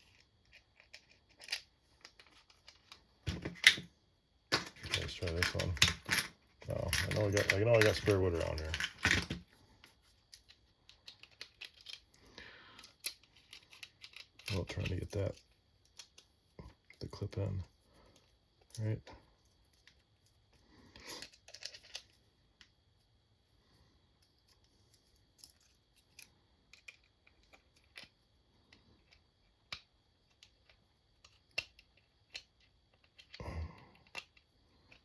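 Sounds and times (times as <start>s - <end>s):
small tool parts clicking: 0.0s - 3.9s, 4.5s - 9.4s, 10.3s - 12.2s, 12.8s - 16.3s, 21.0s - 22.7s, 24.2s - 28.2s, 29.0s - 35.0s.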